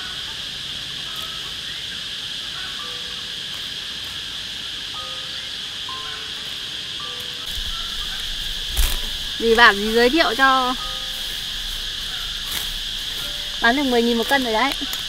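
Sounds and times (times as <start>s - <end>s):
insect chorus buzzing: 0.0s - 15.0s
faint whistled notes: 7.0s - 15.0s.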